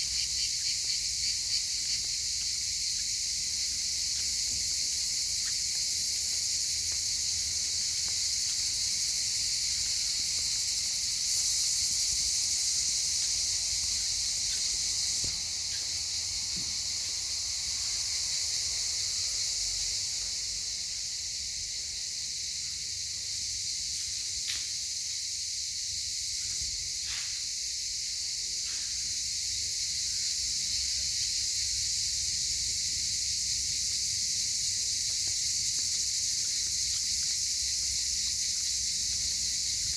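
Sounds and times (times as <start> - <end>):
cicadas buzzing: 0.0 - 39.9.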